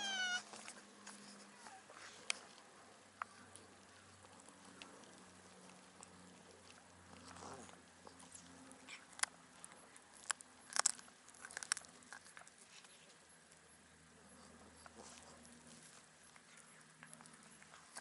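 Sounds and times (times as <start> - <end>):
cat chewing raw fish: 0.3 - 18.0
wet crunches of bone: 8.9 - 12.6.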